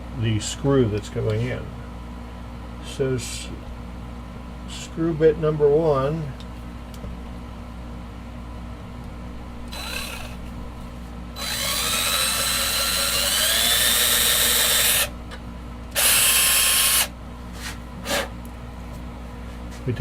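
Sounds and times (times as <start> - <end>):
power drill boring into wood: 9.7 - 10.4, 11.4 - 15.1, 16.0 - 17.1.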